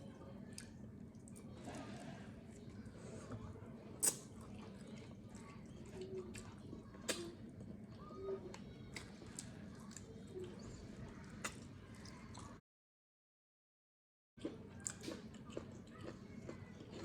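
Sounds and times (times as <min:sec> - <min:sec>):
wet chewing and smacking: 0:08.5 - 0:12.6, 0:14.4 - 0:17.0.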